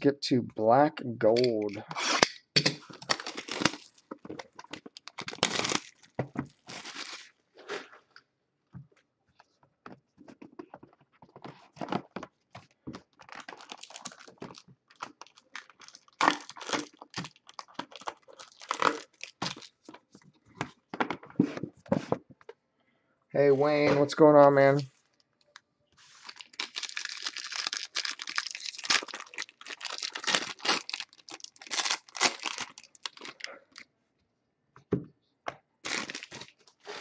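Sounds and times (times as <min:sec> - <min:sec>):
packaging tearing and crinkling: 0:01.5 - 0:07.3, 0:13.2 - 0:20.0, 0:26.1 - 0:33.8, 0:35.8 - 0:37.0.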